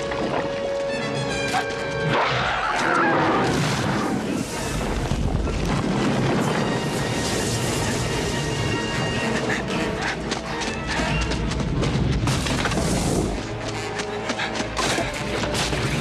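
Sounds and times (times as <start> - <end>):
tense action music: 0.0 - 16.0.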